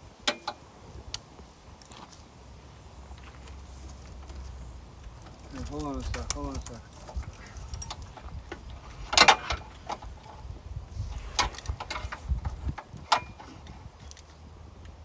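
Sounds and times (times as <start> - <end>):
metallic clanks and rattles: 0.2 - 0.6, 3.2 - 14.5.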